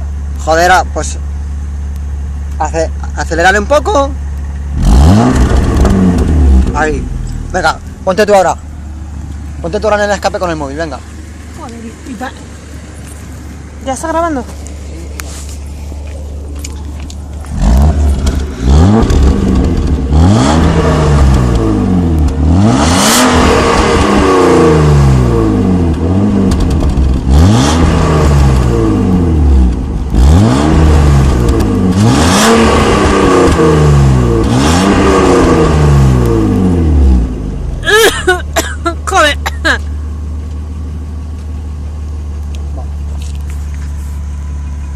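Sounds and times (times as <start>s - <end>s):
car engine revving: 3.3s - 37.9s.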